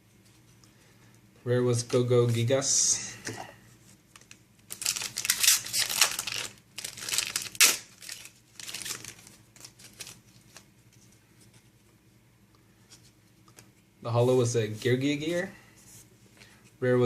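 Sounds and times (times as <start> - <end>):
foil wrapper crinkling and tearing: 4.2 - 10.6.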